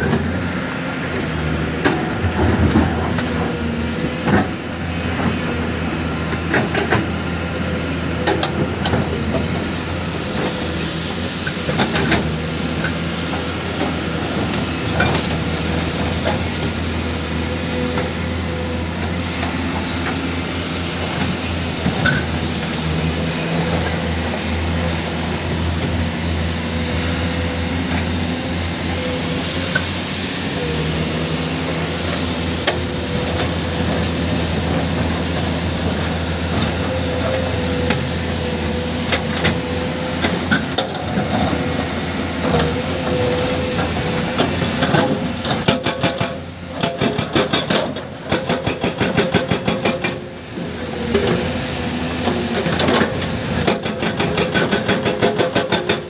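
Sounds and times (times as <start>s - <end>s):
diesel engine running: 0.0s - 56.0s
hydraulic hammer striking rock: 42.4s - 50.3s, 52.3s - 56.0s.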